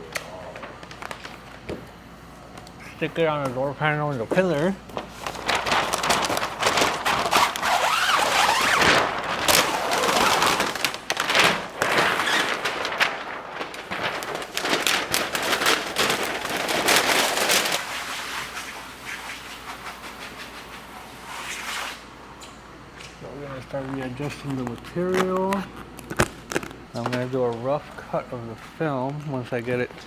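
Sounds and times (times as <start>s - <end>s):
plastic film crackling and snapping: 0.0s - 1.7s, 4.4s - 18.6s, 23.0s - 27.7s.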